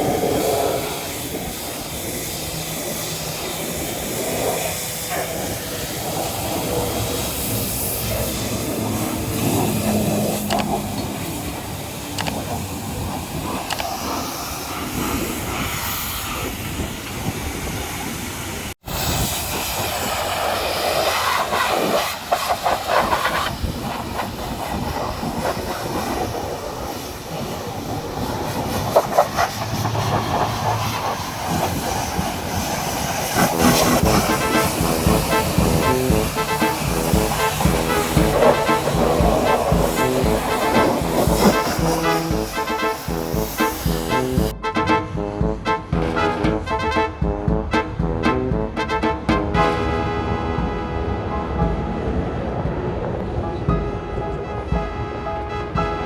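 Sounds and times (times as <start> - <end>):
pressure washer spraying water: 0.0 - 25.8, 26.8 - 44.8.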